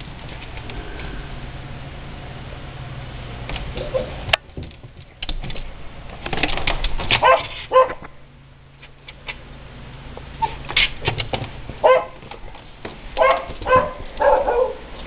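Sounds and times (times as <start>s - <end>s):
dog barking outside: 7.1s - 8.2s, 11.8s - 12.4s, 13.2s - 15.0s
dog barking: 7.2s - 8.1s, 11.8s - 12.2s, 13.2s - 14.9s.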